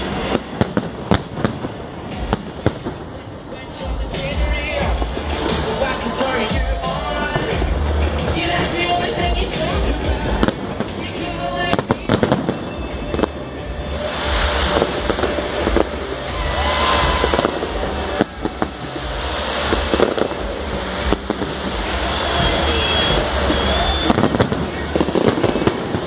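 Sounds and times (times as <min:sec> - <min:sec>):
fireworks fizzing crackle: 0:00.0 - 0:26.0
firework shells bursting: 0:11.7 - 0:26.0.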